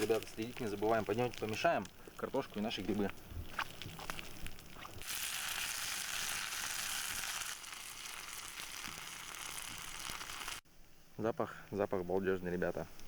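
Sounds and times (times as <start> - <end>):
potatoes sizzling in a pan: 0.0 - 4.4, 5.0 - 10.6.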